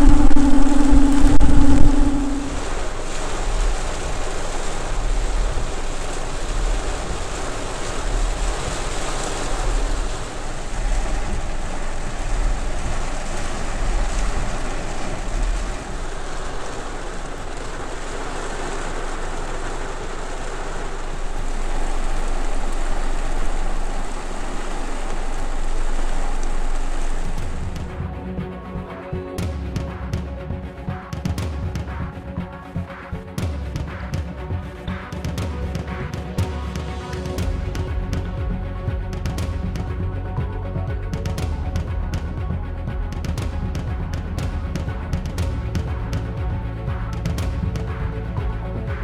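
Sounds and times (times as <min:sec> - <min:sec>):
wind buffeting microphone: 0:00.0 - 0:31.0
heavy rain pouring: 0:00.0 - 0:49.0.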